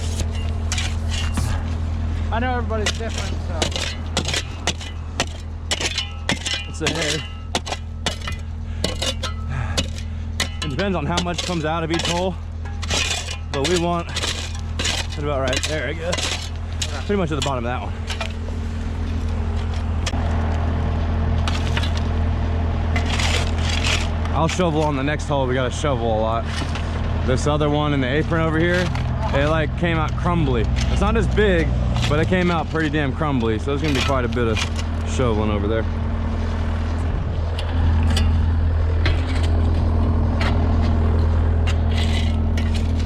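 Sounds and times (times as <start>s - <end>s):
light knocks and scrapes: 0.0s - 1.7s
tools scraping on concrete: 0.0s - 1.7s, 2.7s - 20.2s, 22.9s - 25.0s, 28.0s - 35.5s, 39.0s - 43.0s
diesel engine running: 0.0s - 43.0s.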